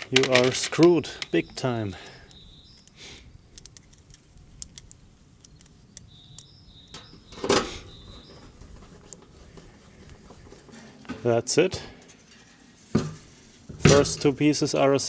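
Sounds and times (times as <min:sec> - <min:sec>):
rustle: 0:12.0 - 0:15.0.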